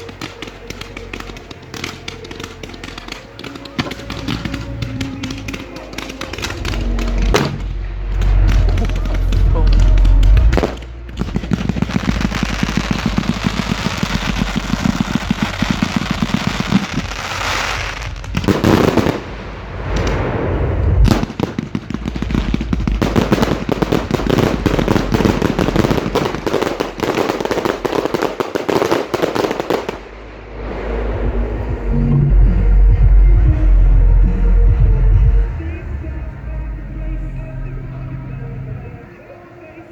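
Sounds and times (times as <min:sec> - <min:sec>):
fireworks popping and crackling: 0:00.0 - 0:31.9
firework bang: 0:01.8 - 0:33.1.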